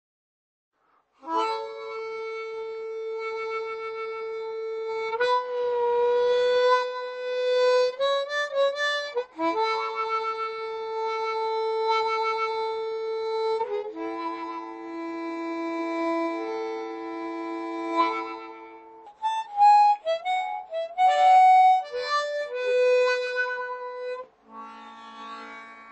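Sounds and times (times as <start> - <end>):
harmonica playing: 1.2 - 25.9.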